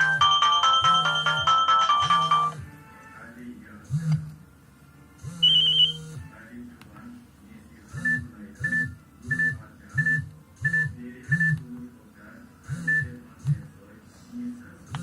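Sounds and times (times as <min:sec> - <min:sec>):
synthesized ringtone music: 0:00.0 - 0:02.7, 0:05.4 - 0:06.2.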